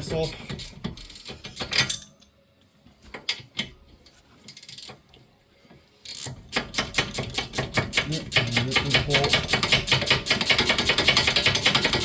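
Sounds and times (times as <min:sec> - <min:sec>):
ratchet wrench clicking: 0:00.6 - 0:02.1, 0:04.5 - 0:05.0, 0:06.1 - 0:12.0.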